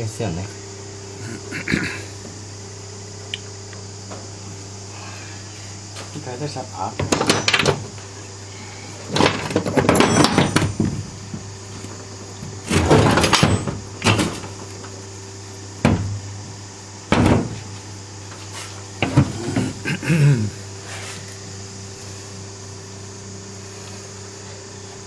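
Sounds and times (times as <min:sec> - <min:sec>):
steady low hum: 0:00.0 - 0:25.0
metal engine parts clattering: 0:09.1 - 0:10.8, 0:12.7 - 0:14.6.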